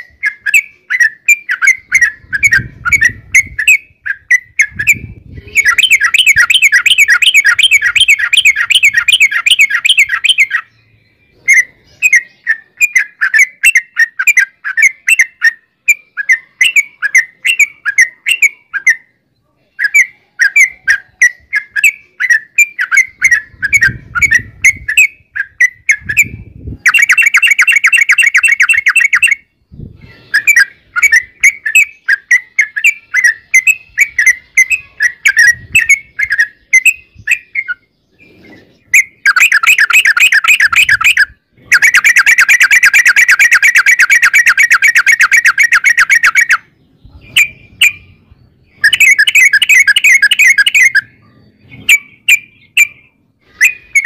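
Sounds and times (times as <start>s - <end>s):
bird singing rolling trills: 0.0s - 54.0s
bubbly bird chirping: 39.0s - 46.6s, 47.2s - 54.0s.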